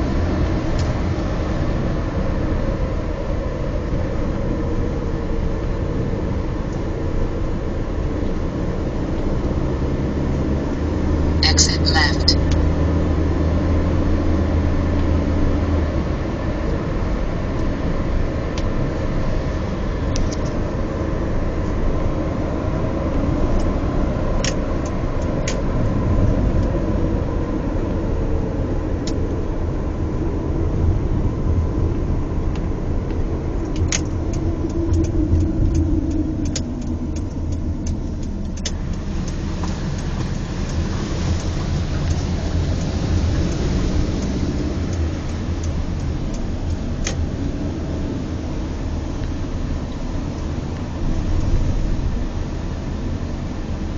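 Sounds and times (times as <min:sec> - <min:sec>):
car engine and road rumble: 0:00.0 - 0:53.9
sharp clicks and knocks: 0:33.6 - 0:41.5.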